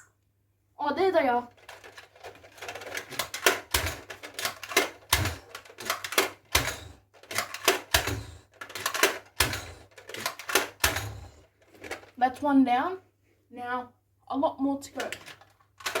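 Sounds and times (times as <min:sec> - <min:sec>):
dull thump of toy blaster: 0:04.8 - 0:11.4.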